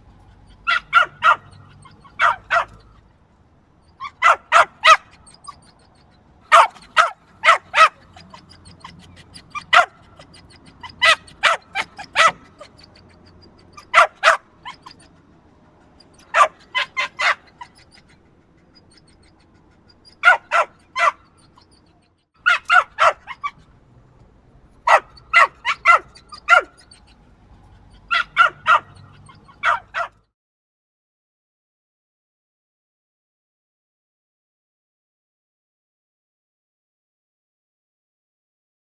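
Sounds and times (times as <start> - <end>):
small dog yapping: 0.2 - 3.0, 3.9 - 15.2, 15.8 - 23.7, 24.8 - 30.2.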